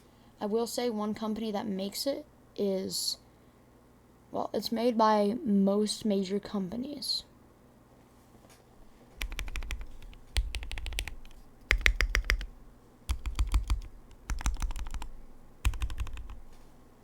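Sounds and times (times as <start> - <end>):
fast typing on mechanical keyboard: 9.2 - 12.5, 13.1 - 16.5.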